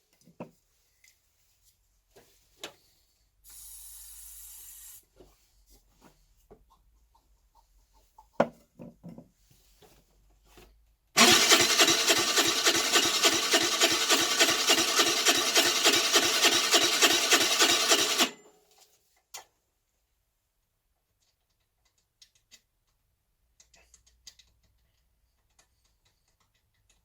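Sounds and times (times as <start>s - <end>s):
electric starter cranking engine: 11.2s - 18.4s.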